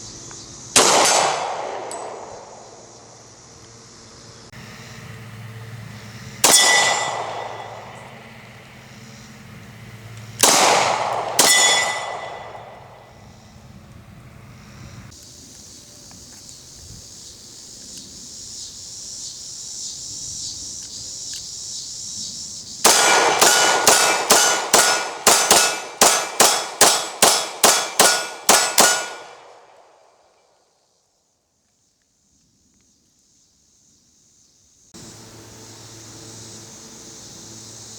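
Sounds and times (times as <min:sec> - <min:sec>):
pistol shots: 0:00.8 - 0:02.7, 0:06.4 - 0:08.1, 0:10.4 - 0:13.1, 0:22.8 - 0:29.9
steel plate ringing: 0:06.4 - 0:08.2, 0:11.4 - 0:13.1, 0:22.9 - 0:29.4.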